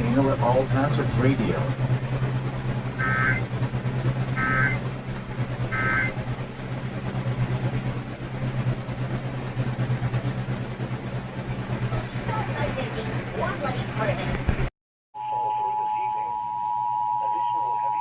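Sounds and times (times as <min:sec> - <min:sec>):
steady low hum: 0:00.0 - 0:14.7
raspy digital tone bursts: 0:03.0 - 0:03.5, 0:04.4 - 0:04.8, 0:05.7 - 0:06.2.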